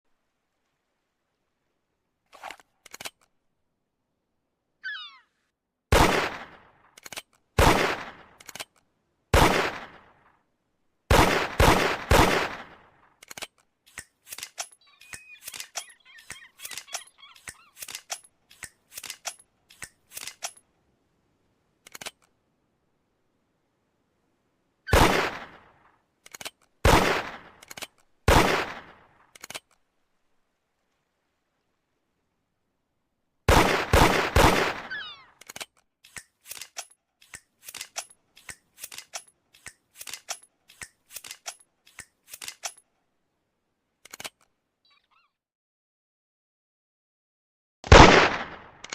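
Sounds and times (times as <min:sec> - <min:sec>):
small metallic clicks: 0:02.4 - 0:03.4, 0:06.9 - 0:07.5, 0:08.4 - 0:08.9, 0:13.2 - 0:20.7, 0:21.8 - 0:22.4, 0:26.2 - 0:26.8, 0:27.5 - 0:28.2, 0:29.3 - 0:29.8, 0:35.3 - 0:43.0, 0:44.0 - 0:44.6.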